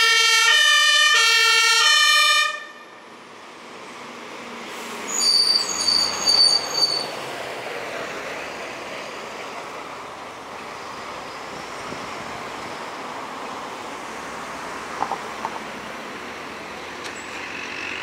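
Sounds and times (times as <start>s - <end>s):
vehicles driving past: 1.2s - 18.0s
pulsing high-pitched squeal: 5.0s - 7.1s.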